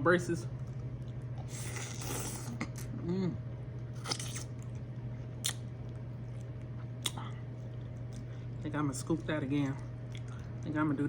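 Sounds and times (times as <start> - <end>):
steady low hum: 0.0 - 11.0
wet chewing and smacking: 0.6 - 2.9, 3.8 - 10.8
lip-smack clicks: 5.4 - 5.6.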